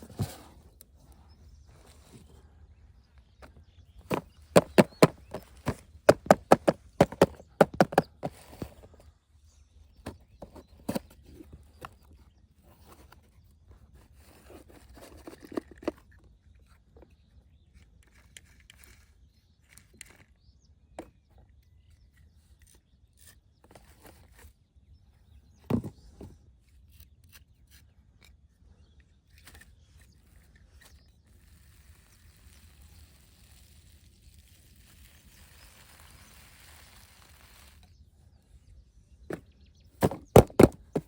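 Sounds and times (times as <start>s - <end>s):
handling rubbing and scraping: 4.0s - 9.1s, 40.0s - 41.0s.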